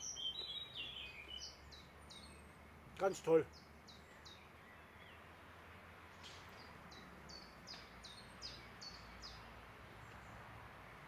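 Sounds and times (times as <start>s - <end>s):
songbird singing high notes: 0.0s - 2.5s.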